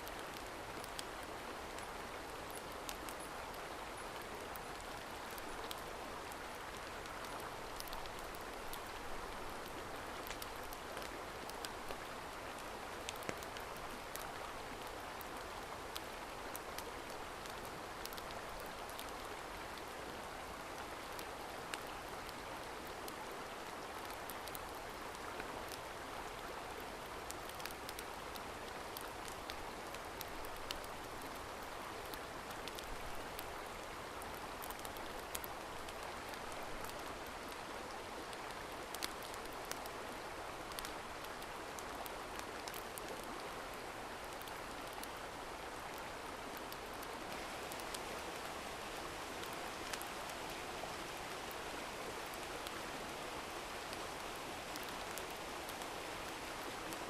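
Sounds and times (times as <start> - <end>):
small sharp ticks: 0.0 - 19.9, 27.2 - 37.7, 38.3 - 40.0, 40.7 - 43.5, 44.2 - 48.5, 49.3 - 50.6, 53.8 - 57.0
mountain stream rushing: 0.0 - 57.0.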